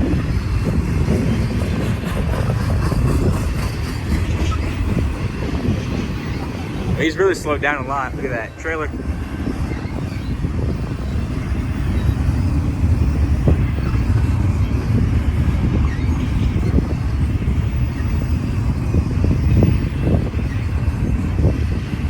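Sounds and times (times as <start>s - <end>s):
freight train wheels rumbling on rails: 0.0s - 22.0s.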